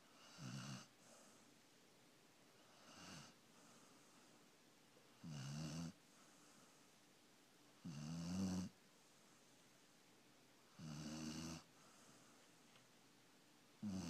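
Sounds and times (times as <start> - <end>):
puppy snoring: 0.0 - 1.4, 2.6 - 3.8, 5.1 - 6.0, 7.8 - 8.8, 10.7 - 11.8, 13.8 - 14.0
soft breath: 0.8 - 1.8, 2.5 - 5.1, 6.0 - 7.2, 11.6 - 13.0.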